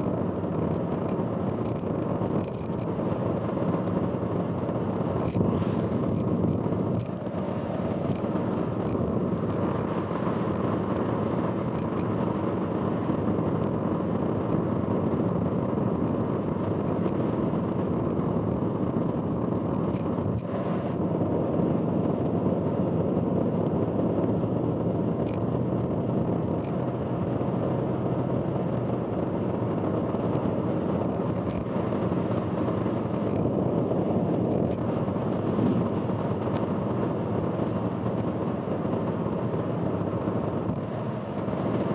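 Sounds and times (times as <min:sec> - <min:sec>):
faint ticks: 0:00.0 - 0:02.9, 0:31.0 - 0:31.7
car road noise: 0:00.0 - 0:41.9.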